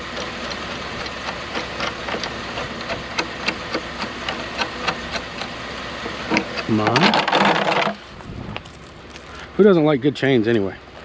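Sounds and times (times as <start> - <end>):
vehicle engine idling: 0.0 - 11.0
metal chains clinking and rattling: 6.9 - 9.5.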